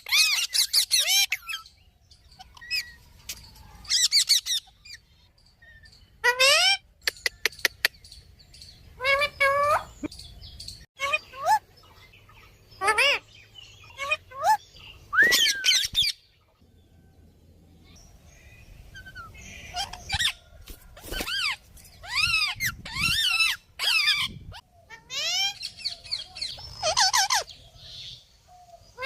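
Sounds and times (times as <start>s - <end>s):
parrot whistling and chirping: 13.9s - 16.2s.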